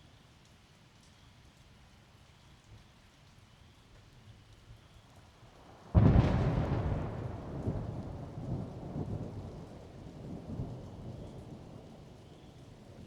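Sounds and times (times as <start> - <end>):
steady rain: 0.0 - 13.0
thunder rumbling: 6.0 - 10.8.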